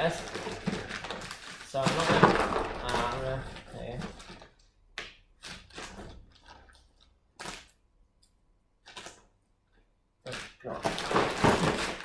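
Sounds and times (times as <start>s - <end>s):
packaging scraping and rustling: 0.0s - 4.6s, 10.3s - 12.0s.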